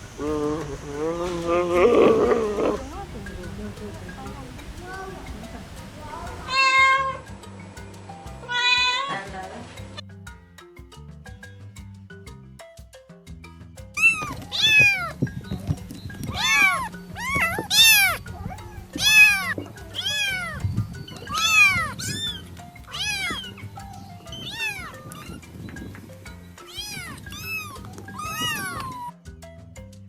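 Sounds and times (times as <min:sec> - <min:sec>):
faint background music: 0:00.5 - 0:30.0
cat meowing: 0:06.4 - 0:07.2, 0:08.5 - 0:09.3, 0:14.0 - 0:15.2, 0:16.3 - 0:23.6, 0:24.3 - 0:25.4, 0:26.7 - 0:29.1.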